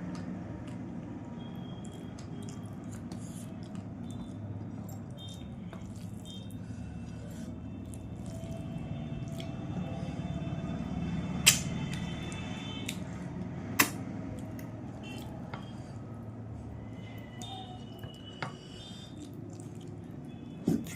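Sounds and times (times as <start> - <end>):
wet squishing of eating: 0.1 - 10.3, 11.4 - 20.9
chewing: 0.6 - 9.6, 17.2 - 20.9.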